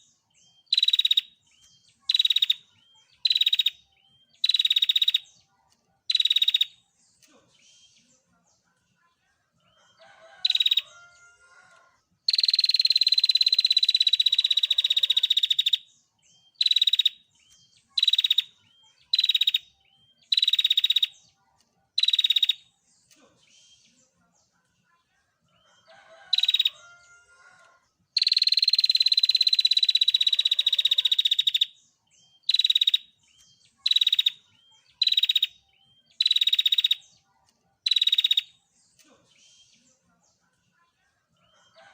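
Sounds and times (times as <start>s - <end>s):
bird trilling: 0.6s - 1.4s, 2.1s - 5.2s, 6.1s - 6.8s, 10.3s - 11.4s, 12.3s - 15.9s, 16.5s - 17.2s, 18.0s - 21.2s, 22.0s - 22.6s, 26.1s - 27.2s, 28.2s - 31.8s, 32.4s - 33.1s, 33.8s - 37.0s, 37.9s - 38.5s.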